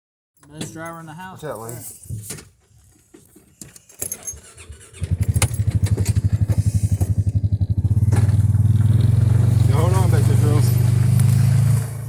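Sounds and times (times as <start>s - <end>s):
keys jangling: 3.6s - 4.6s
small engine starting and running: 4.0s - 12.0s.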